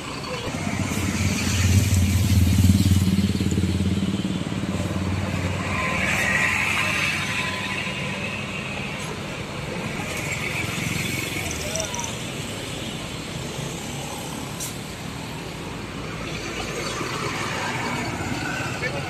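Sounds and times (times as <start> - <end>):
bus engine rumbling past: 0.0 - 12.4.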